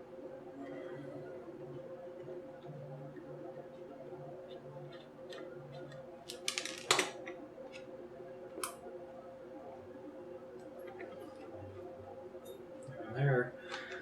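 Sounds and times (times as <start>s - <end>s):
faint steady hum: 0.0s - 14.0s
plastic parts clicking loose: 6.3s - 7.2s.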